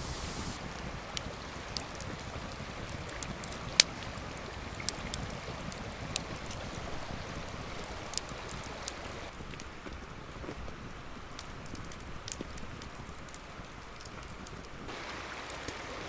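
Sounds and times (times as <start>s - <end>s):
low rushing noise: 0.0s - 0.6s
campfire crackling and popping: 0.0s - 15.6s.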